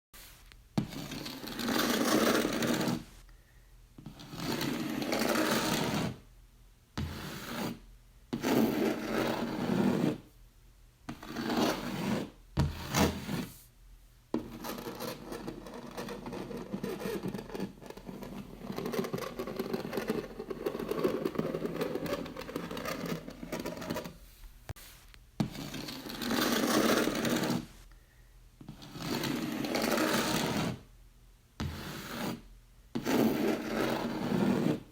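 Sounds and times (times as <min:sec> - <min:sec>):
fingernails scratching a wall: 0:00.8 - 0:03.1, 0:04.0 - 0:06.2, 0:07.0 - 0:10.2, 0:11.1 - 0:13.6, 0:14.4 - 0:24.2, 0:25.4 - 0:27.7, 0:28.7 - 0:30.8, 0:31.6 - 0:34.9.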